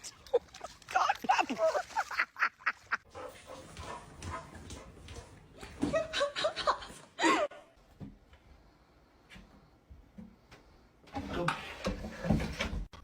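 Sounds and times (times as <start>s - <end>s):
person laughing: 0.0s - 3.0s.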